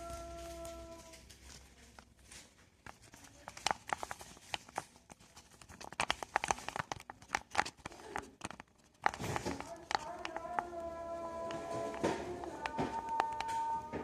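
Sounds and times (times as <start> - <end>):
stirrer clicking in sticky slime: 2.8 - 14.0.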